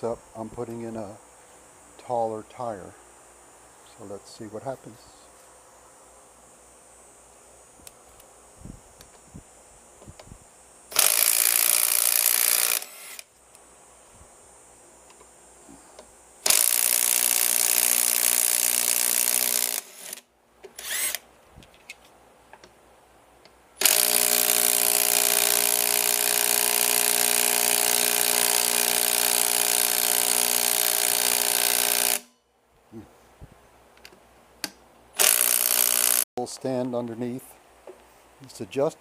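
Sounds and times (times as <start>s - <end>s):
power tool motor whining: 10.9s - 13.3s, 16.4s - 21.2s, 23.8s - 32.3s, 35.2s - 36.2s.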